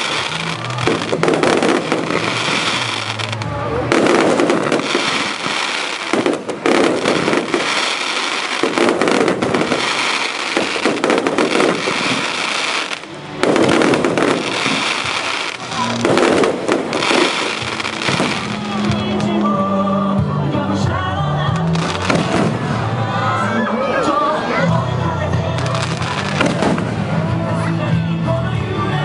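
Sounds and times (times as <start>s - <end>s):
fireworks bursting and crackling: 0.0s - 19.5s, 21.5s - 23.2s, 25.4s - 27.4s
music with held notes: 0.0s - 29.0s.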